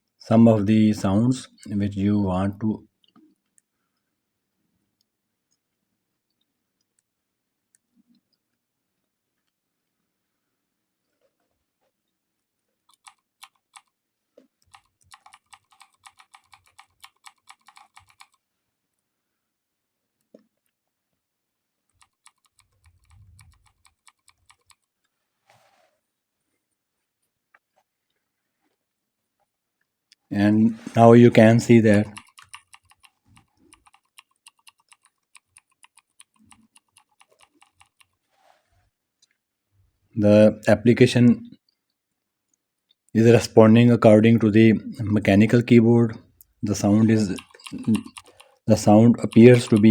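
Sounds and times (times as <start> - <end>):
mechanical keyboard keystroke clicks: 14.6 - 18.4, 22.0 - 24.8, 31.9 - 38.1, 46.9 - 49.9.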